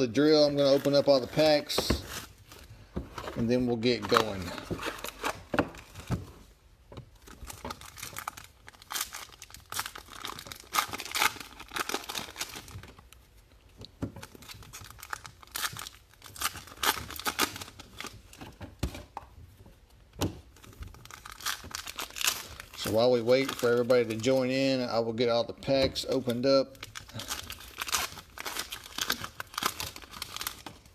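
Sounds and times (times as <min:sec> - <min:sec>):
wrappers ripping and crinkling: 0:03.3 - 0:06.1, 0:07.2 - 0:13.2, 0:14.2 - 0:18.4, 0:20.5 - 0:24.8, 0:26.1 - 0:30.9.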